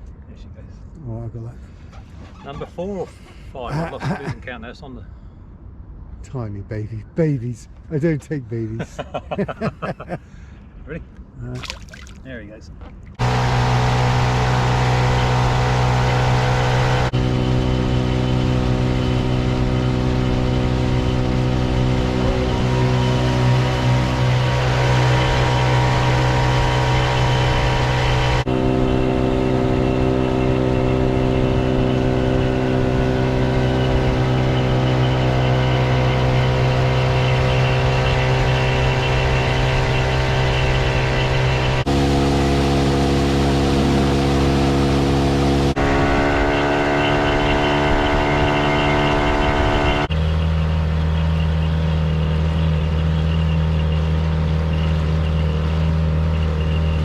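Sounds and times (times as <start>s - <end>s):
outboard motor drone: 13.1s - 57.0s.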